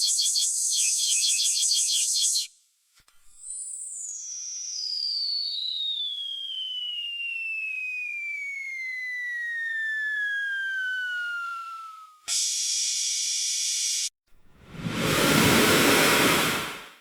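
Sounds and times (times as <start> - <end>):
high whistle sliding down: 5.4 - 12.1
faint hiss: 14.6 - 17.0.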